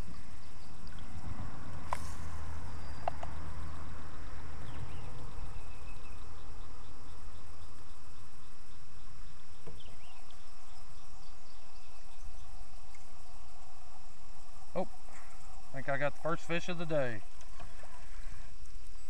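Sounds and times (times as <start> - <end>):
low rumble: 0.0 - 7.7
insects chirping: 0.0 - 19.0.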